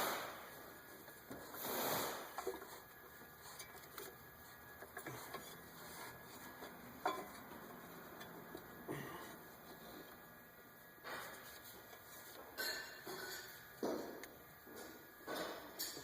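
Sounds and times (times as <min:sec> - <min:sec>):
hand tools tapping on metal: 0:02.4 - 0:09.2.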